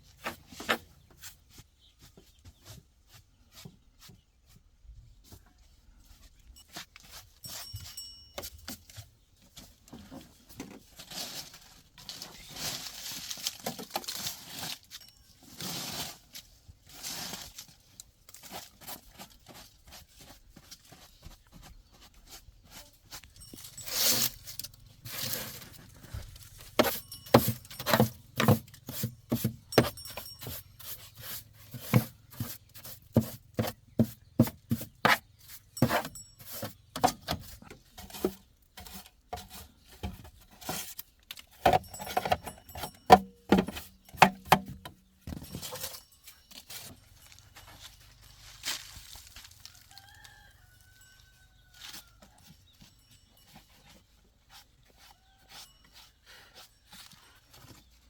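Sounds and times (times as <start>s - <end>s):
scraping and rubbing: 9.7s - 49.7s.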